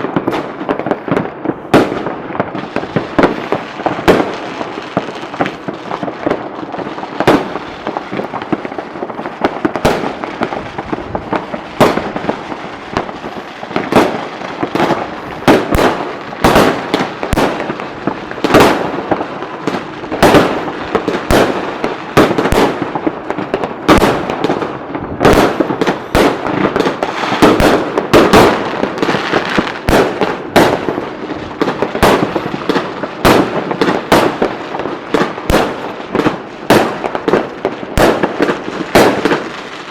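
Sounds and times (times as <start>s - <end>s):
fireworks crackling: 0.0s - 39.9s.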